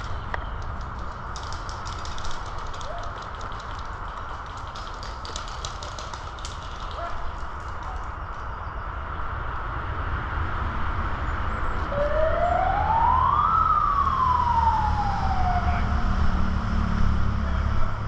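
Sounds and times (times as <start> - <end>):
siren wail: 11.8 - 17.2.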